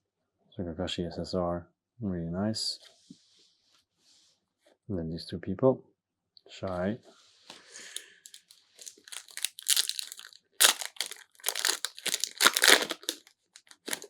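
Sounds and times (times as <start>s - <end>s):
foil wrapper crinkling and tearing: 8.0s - 14.0s.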